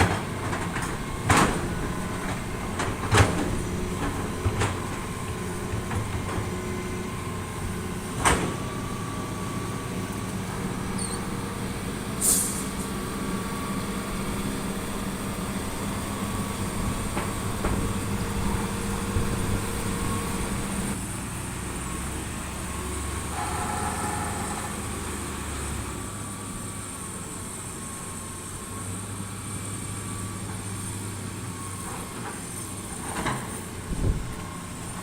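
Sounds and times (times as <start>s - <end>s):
diesel engine running: 0.0s - 35.0s
brief high hiss: 12.2s - 12.9s.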